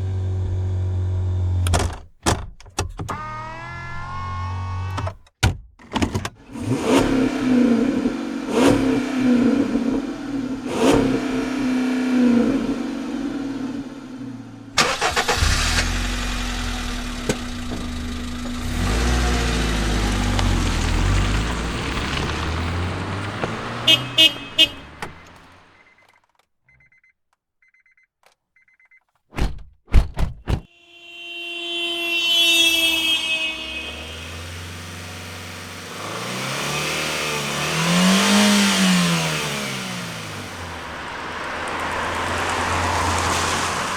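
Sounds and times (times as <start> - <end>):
car door shutting: 1.5 - 6.4, 17.0 - 19.2, 23.2 - 25.8
car engine revving: 6.4 - 25.8, 30.8 - 43.9.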